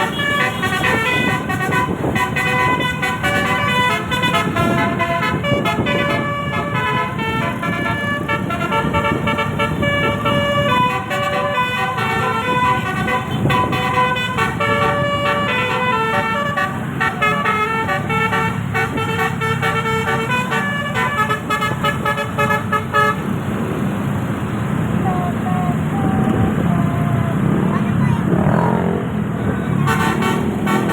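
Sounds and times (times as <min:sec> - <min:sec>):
musical air horn melody: 0:00.0 - 0:23.2, 0:29.8 - 0:30.9.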